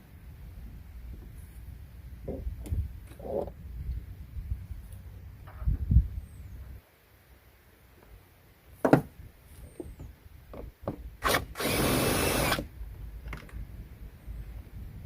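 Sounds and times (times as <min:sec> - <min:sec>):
handheld power tool running: 0:11.2 - 0:12.7.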